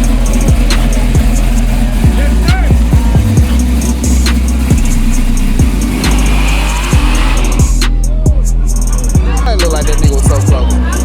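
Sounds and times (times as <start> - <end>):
deep sliding bass hits: 0.0 - 11.0
ticking hi-hats: 0.0 - 11.0
short pitched glide: 2.3 - 8.2.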